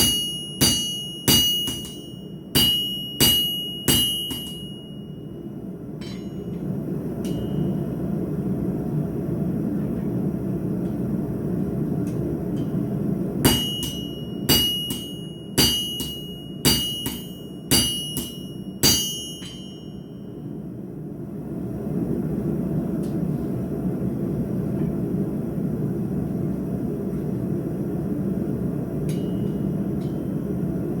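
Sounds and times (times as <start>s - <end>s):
hammer striking steel on anvil: 0.0s - 5.2s, 6.0s - 7.9s, 13.4s - 20.3s, 29.1s - 30.4s.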